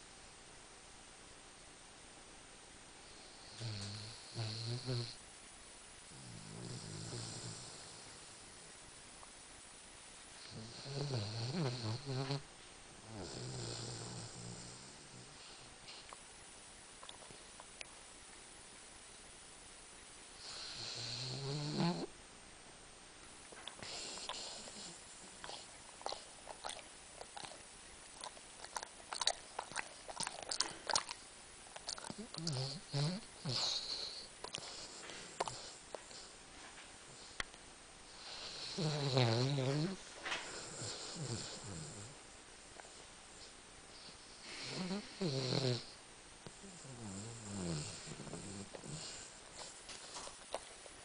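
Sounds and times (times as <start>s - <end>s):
dog snoring: 3.0s - 5.2s, 6.1s - 8.4s, 10.4s - 16.1s, 20.4s - 22.1s, 23.8s - 27.6s, 31.8s - 36.3s, 38.1s - 42.2s, 42.8s - 50.6s
dog jaw and lip smacks: 25.4s - 32.5s.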